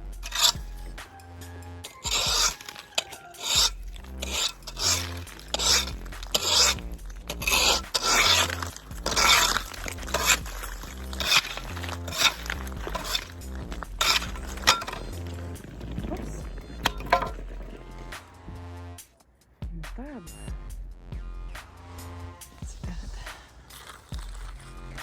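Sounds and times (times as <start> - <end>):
ice scraper scraping ice: 0.0 - 1.0, 1.8 - 18.1, 23.6 - 24.6
background music: 0.0 - 19.1.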